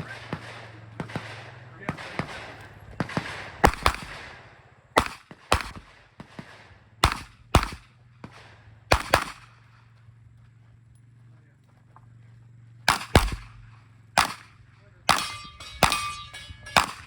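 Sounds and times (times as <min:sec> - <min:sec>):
revolver shots: 0:00.0 - 0:04.4, 0:12.9 - 0:14.5.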